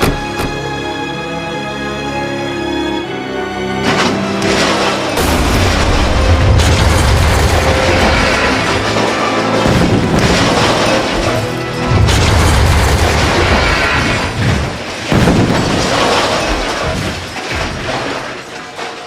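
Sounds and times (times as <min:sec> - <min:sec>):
film soundtrack music: 0:00.0 - 0:18.9
heavy booms and explosion rumble: 0:04.4 - 0:18.5.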